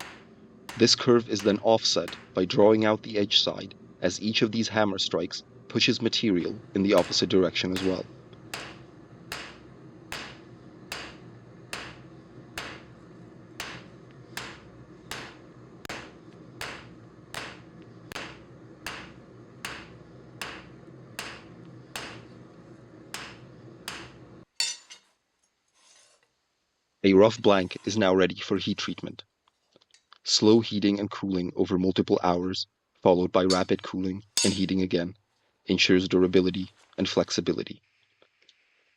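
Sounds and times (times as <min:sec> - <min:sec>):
hammer striking hot steel: 0:00.0 - 0:04.2, 0:05.4 - 0:24.8, 0:34.4 - 0:34.7
steady low hum: 0:00.0 - 0:24.5.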